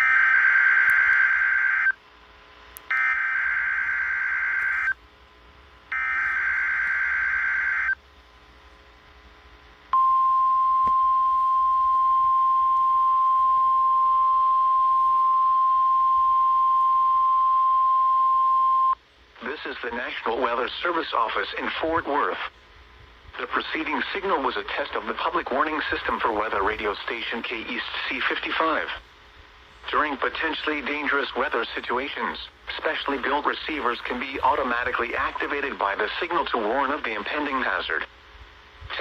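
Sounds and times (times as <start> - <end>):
faint radio hiss: 13.1 - 39.0.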